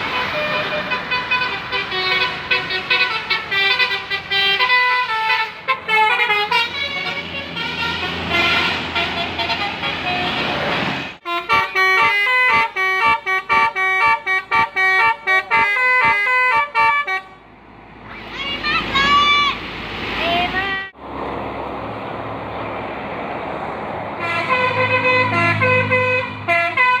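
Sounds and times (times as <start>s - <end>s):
musical bus horn melody: 0.0s - 17.4s, 24.2s - 27.0s.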